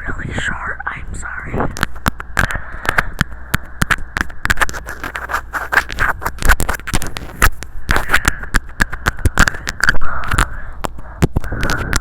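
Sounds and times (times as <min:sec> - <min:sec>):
mouth clicks on microphone: 0:01.5 - 0:12.0
scratchy rustle on microphone: 0:04.2 - 0:08.3.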